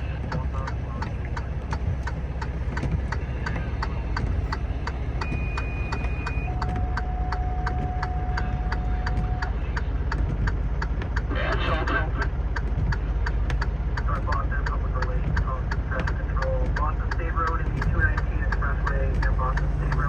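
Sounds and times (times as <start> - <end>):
engine idling: 0.0 - 20.0
flasher relay ticking: 0.1 - 20.0
two steady tones: 3.1 - 10.2.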